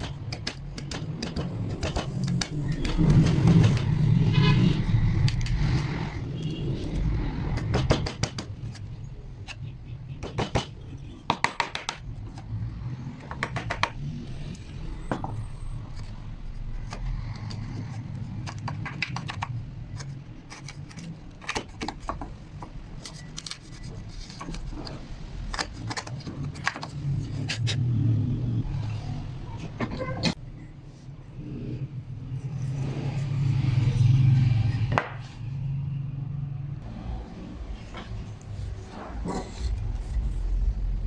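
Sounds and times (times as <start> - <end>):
steady low rumble: 36.8 - 41.0.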